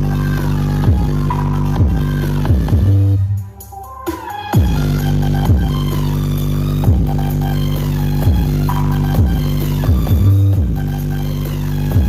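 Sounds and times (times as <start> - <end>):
electronic dance music: 0.0 - 12.0
deep kick drums: 0.8 - 1.2, 1.8 - 3.0, 4.6 - 5.9, 6.8 - 7.3, 8.2 - 10.9
synth melody: 2.7 - 12.0.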